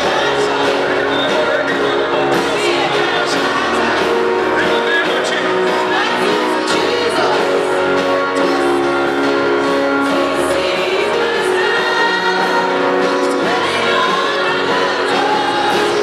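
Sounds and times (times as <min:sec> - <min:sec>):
gospel singing: 0:00.0 - 0:16.0
instrumental accompaniment: 0:00.0 - 0:16.0.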